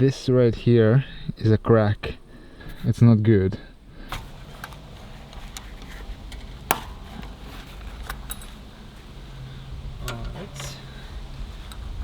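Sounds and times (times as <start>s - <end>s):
faint low hum: 0.0s - 12.0s
metal parts clicking and tapping: 4.3s - 12.0s.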